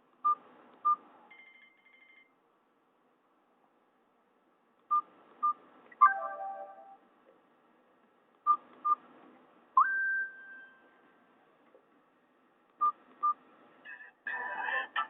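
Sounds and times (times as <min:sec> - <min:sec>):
phone keypad beeps: 0:04.9 - 0:07.0.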